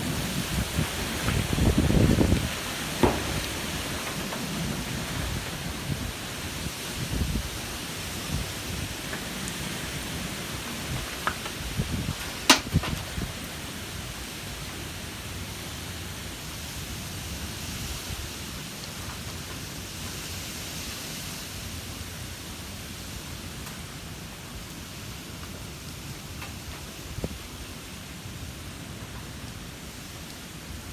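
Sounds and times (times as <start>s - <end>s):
wind blowing: 0.0s - 13.6s
sharp knocks: 3.0s - 3.7s.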